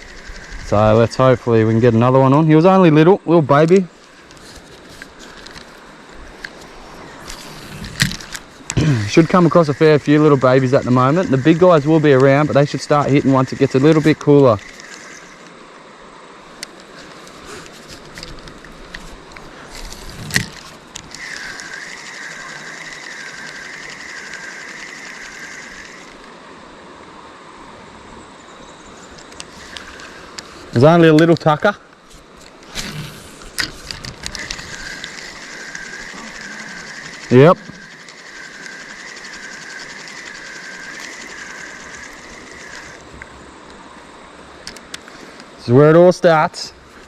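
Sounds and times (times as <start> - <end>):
fishing reel click: 0.0 - 1.0, 7.2 - 15.5, 19.9 - 26.2, 33.6 - 43.1
fishing reel whirring: 0.0 - 2.1, 4.0 - 15.5, 16.6 - 26.3, 32.6 - 43.2.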